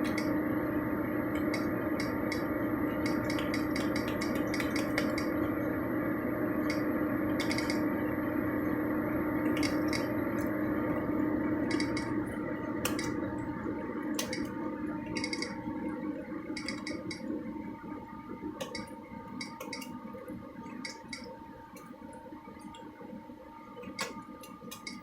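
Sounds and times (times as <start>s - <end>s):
low hum: 0.0s - 25.0s
plastic keyboard parts clicking: 14.2s - 14.5s.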